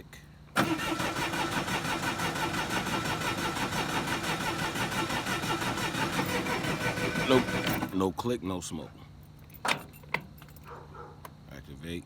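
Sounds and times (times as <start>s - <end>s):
diesel engine cranking: 0.6s - 8.1s.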